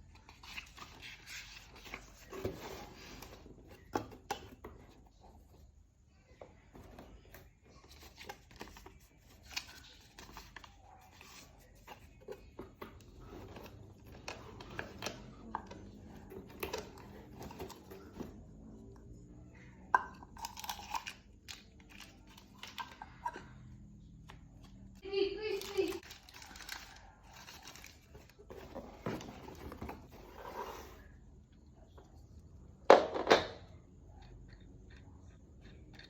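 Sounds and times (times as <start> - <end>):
packaging rustling and tearing: 25.6 - 30.1.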